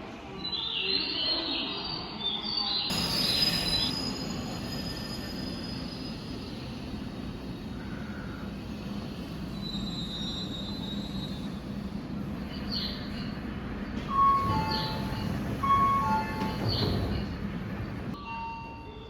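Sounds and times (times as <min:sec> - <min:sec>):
train rumbling through station: 0:00.0 - 0:19.0
wheel squeal: 0:02.9 - 0:06.6, 0:09.4 - 0:11.7.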